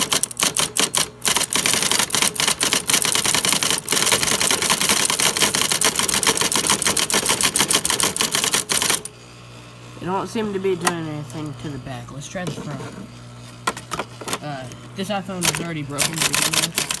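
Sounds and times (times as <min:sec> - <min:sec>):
electric typewriter clacking on glass: 0:00.0 - 0:09.1, 0:13.6 - 0:17.0.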